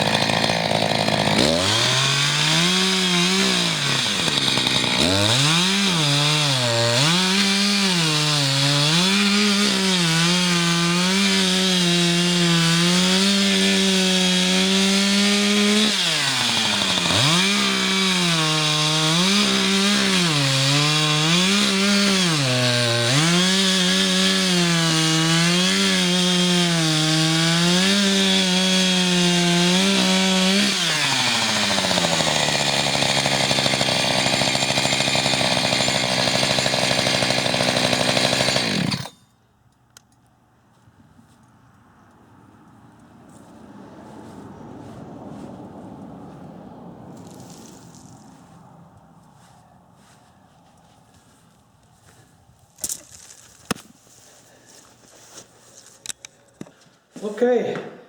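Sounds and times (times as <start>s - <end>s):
chainsaw cutting log: 0.0s - 39.3s, 47.1s - 48.4s.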